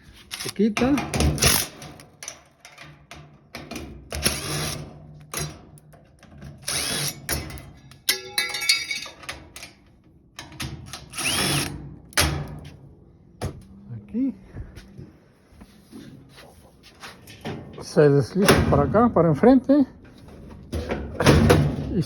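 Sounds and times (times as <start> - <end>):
power drill spinning: 6.6 - 7.2, 11.1 - 11.7.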